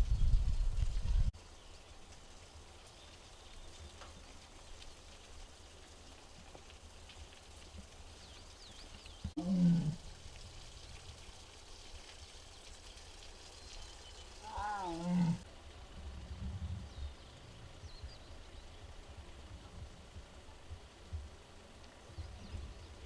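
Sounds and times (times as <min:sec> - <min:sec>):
tiger calling: 0:09.4 - 0:10.0, 0:14.4 - 0:15.4.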